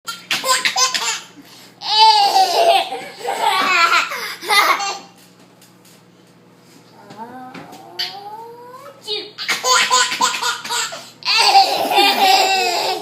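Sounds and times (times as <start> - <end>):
baby giggling: 1.9 - 5.0, 9.4 - 13.0.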